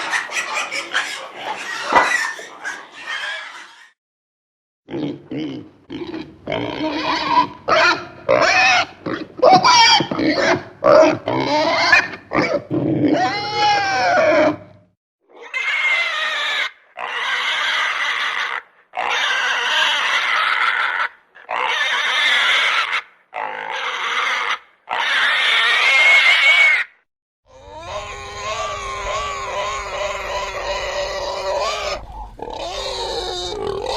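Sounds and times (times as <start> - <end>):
pig squealing and grunting: 0.0 - 4.0, 4.9 - 33.9.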